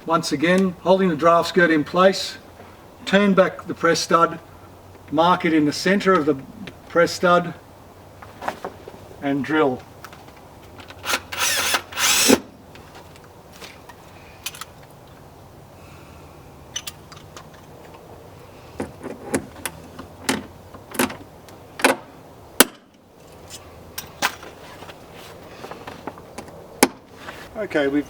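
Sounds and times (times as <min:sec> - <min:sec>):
drilling through metal plate: 0:11.0 - 0:12.5.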